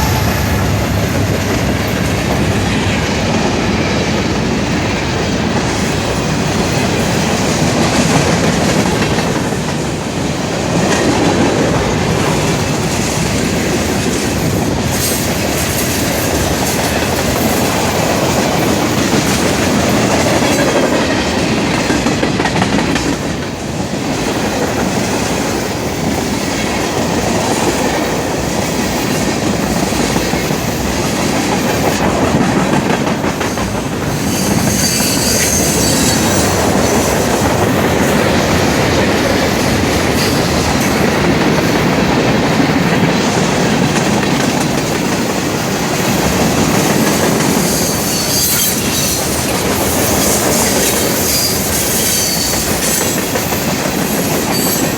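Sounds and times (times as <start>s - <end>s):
high wheel squeals: 0.0s - 2.3s, 34.1s - 37.2s, 47.5s - 54.9s
steel wheels clattering on rail: 0.0s - 54.9s.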